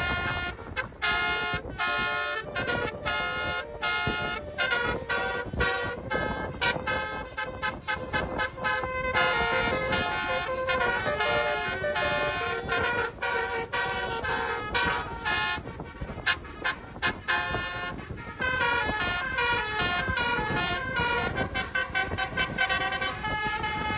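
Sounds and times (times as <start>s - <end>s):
bus horn playing multi-tone tune: 0.0s - 23.9s
steady held horn tone: 0.0s - 23.9s.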